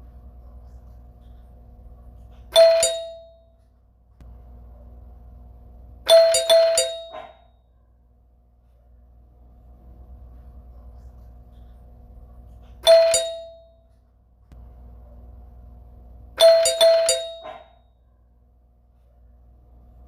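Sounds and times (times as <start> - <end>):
faint steady hum: 0.0 - 20.0
doorbell chime ringing: 2.5 - 3.6, 6.1 - 7.4, 12.8 - 13.9, 16.4 - 17.8.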